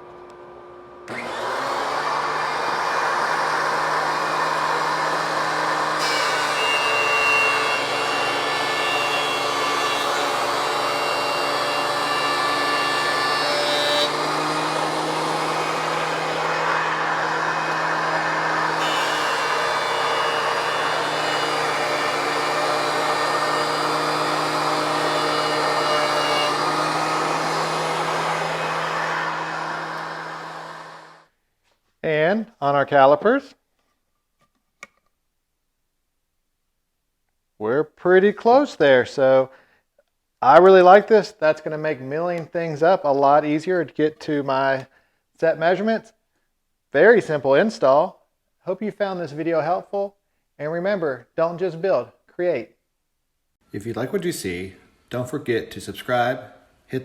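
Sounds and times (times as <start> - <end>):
thickness planer motor running: 0.0 - 31.2
planer cutting boards: 0.0 - 31.3.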